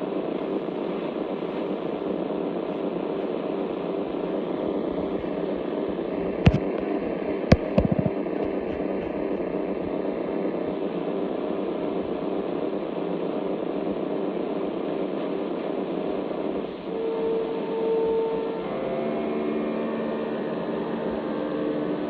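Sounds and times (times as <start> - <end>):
rough buzzing radio signal: 0.4 - 13.5, 14.6 - 22.0
radio static: 1.6 - 9.5.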